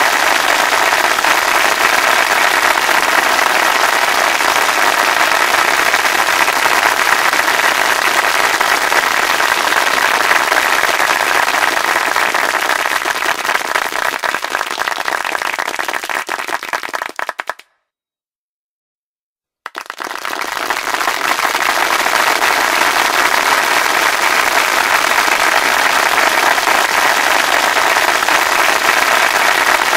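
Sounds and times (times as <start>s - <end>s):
hands clapping: 0.0s - 17.7s, 19.6s - 29.9s.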